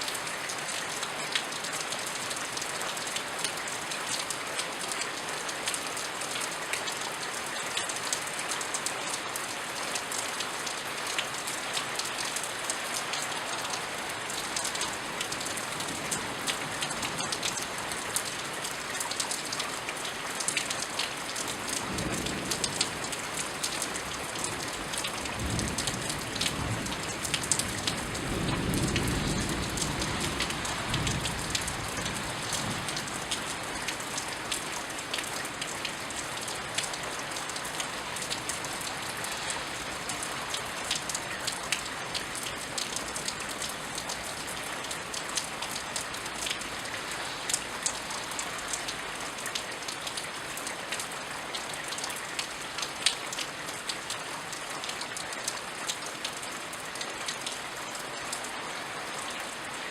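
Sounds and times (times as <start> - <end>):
steady rainfall: 0.0 - 59.9
raindrops ticking close by: 0.1 - 58.5
distant thunder rumble: 27.9 - 32.9.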